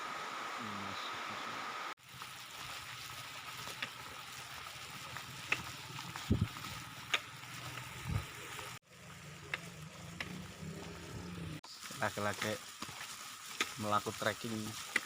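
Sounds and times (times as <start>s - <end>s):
rain falling: 0.0s - 15.0s
sharp ticks of raindrops: 5.2s - 8.0s.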